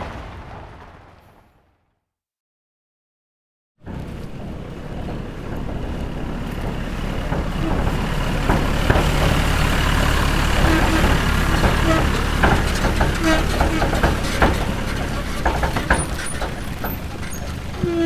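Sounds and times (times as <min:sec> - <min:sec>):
tractor engine running: 0:03.9 - 0:18.0.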